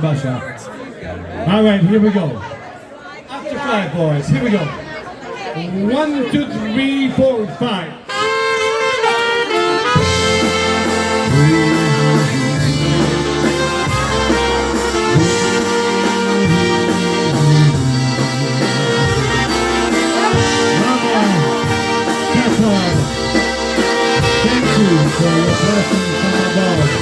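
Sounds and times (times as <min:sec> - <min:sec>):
accordion: 0:08.1 - 0:27.0
brass: 0:08.1 - 0:27.0
polka band playing: 0:08.1 - 0:27.0.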